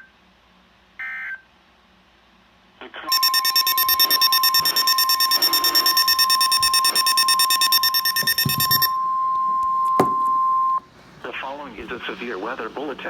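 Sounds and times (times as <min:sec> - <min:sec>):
steady high alert tone: 0:03.1 - 0:09.0.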